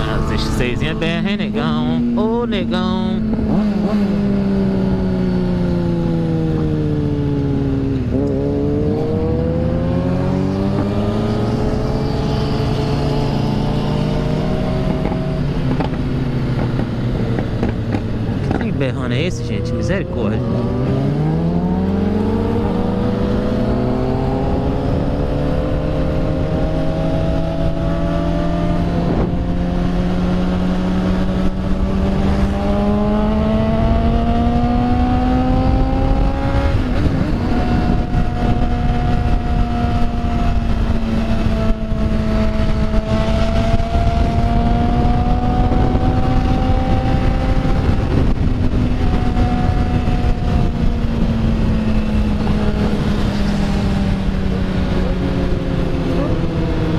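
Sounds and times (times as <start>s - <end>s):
heavy wind rush: 0.0s - 56.9s.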